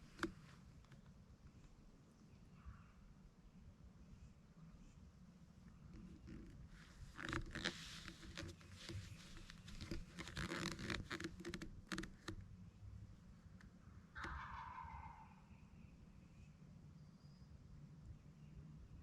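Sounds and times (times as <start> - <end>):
scraping and rustling: 6.0 - 12.4
distant turkey gobbling: 14.2 - 15.7.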